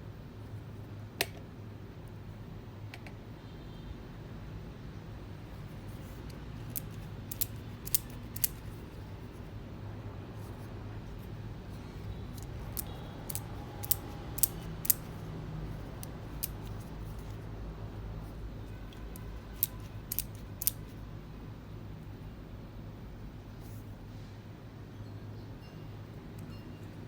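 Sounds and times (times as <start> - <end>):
pliers jaws clicking shut: 6.3 - 8.6, 12.4 - 15.2, 19.2 - 20.9.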